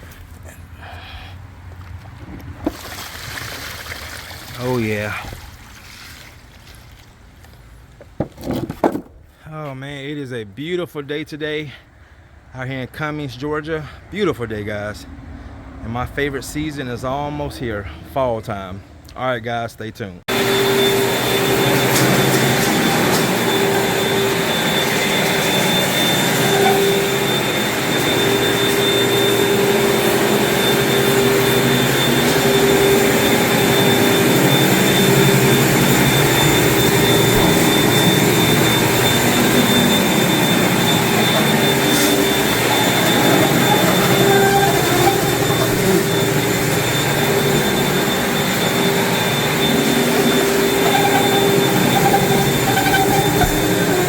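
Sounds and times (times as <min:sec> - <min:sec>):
floor-cleaning machine motor whine: 0:20.3 - 0:54.0
loud rushing noise: 0:20.8 - 0:51.9.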